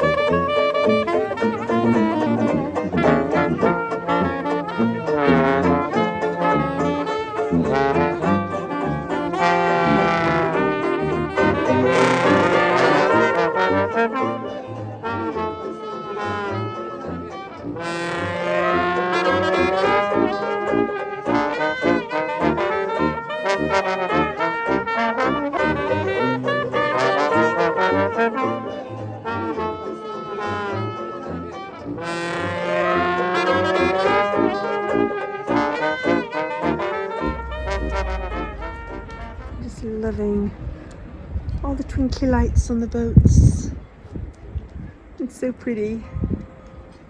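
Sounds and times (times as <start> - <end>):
low bass line: 0.0 - 15.6, 31.8 - 43.7
brass band playing: 0.0 - 40.6.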